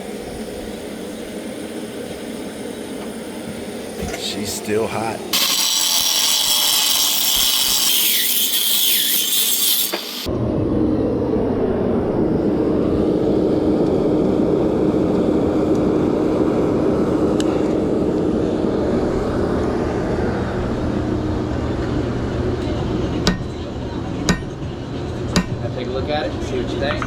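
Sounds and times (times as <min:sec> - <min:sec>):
constant hum: 0:00.0 - 0:08.2, 0:09.8 - 0:27.0
power tool whining: 0:05.3 - 0:10.3
forge roaring: 0:09.9 - 0:22.6.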